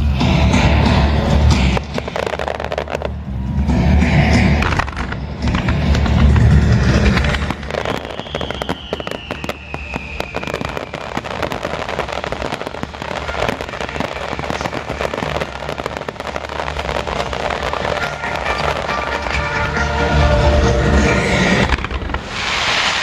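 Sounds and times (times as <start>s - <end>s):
fireworks crackling: 0.0s - 23.0s
firework whistle falling in pitch: 7.7s - 11.8s.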